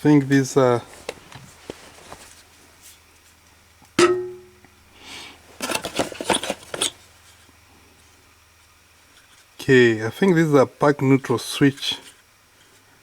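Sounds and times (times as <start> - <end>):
metal parts rattling together: 5.6 - 7.0.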